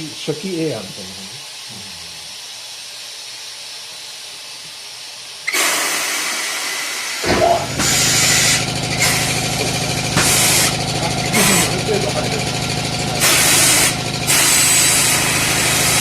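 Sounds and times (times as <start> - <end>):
compressed air blasting into tire: 5.4 - 16.0
motor running steadily: 5.7 - 16.0.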